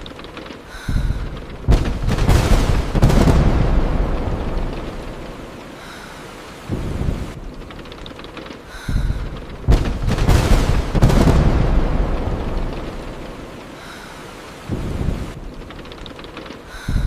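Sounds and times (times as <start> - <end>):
rain on car windshield: 0.0 - 17.0
thunder rumbling and cracking: 0.0 - 17.0.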